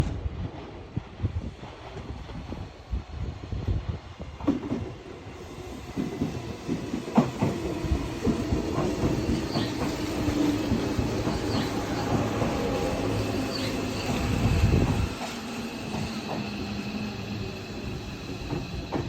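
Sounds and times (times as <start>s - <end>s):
train rolling rumble: 0.0s - 19.0s
wheels clacking over rail joints: 6.0s - 16.6s.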